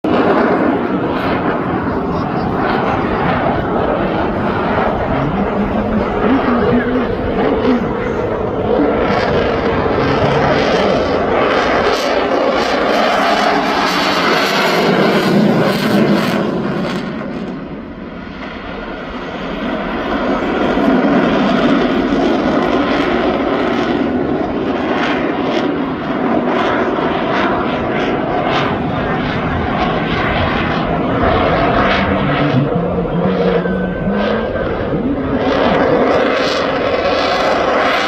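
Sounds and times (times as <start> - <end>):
jet engines roaring overhead: 0.0 - 38.0.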